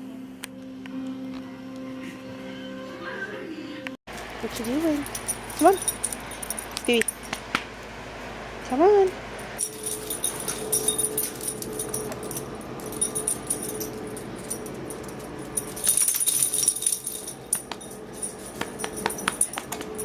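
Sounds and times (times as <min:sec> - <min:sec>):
dog collar tags jingling: 0:04.5 - 0:07.4, 0:09.4 - 0:20.0.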